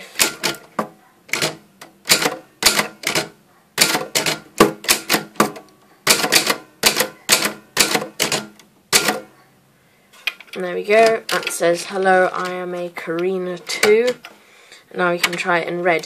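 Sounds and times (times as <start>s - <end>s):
typewriter keys clacking: 1.3s - 9.2s.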